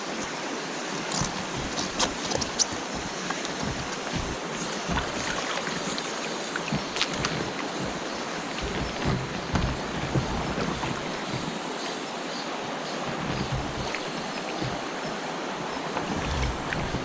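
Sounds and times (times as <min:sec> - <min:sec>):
wind buffeting the microphone: 0:00.0 - 0:11.8, 0:13.0 - 0:17.0
rushing water: 0:00.0 - 0:17.0.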